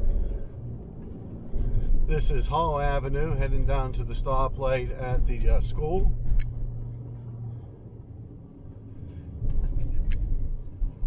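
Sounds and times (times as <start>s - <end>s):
car tyres and engine rumble: 0.0s - 11.0s.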